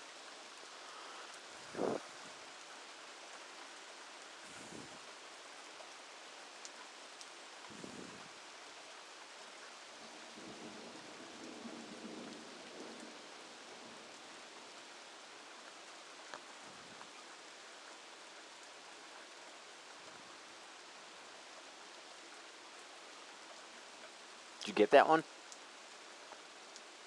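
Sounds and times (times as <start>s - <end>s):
rain hissing: 0.0s - 3.5s.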